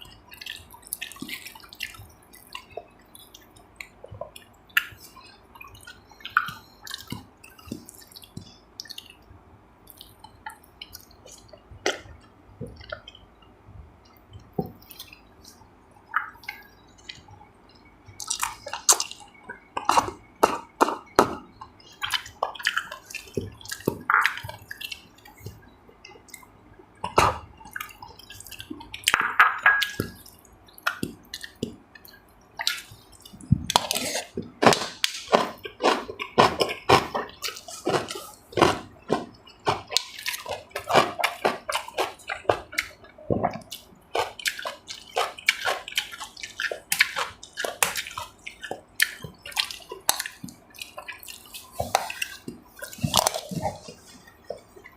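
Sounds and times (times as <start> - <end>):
wet chewing: 0.0 - 13.3, 14.0 - 54.9.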